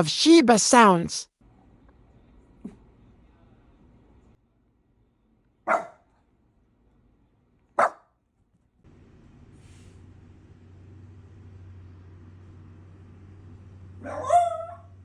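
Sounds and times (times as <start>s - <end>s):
low steady hum: 1.4s - 15.0s
dog barking: 5.6s - 6.1s, 7.8s - 8.1s, 14.0s - 15.0s.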